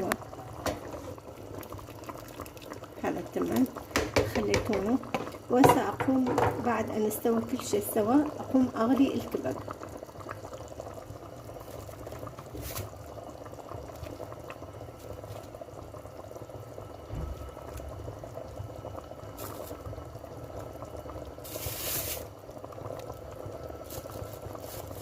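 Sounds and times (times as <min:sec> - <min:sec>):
pot boiling and bubbling: 0:00.0 - 0:25.0
short hiss: 0:21.4 - 0:22.3.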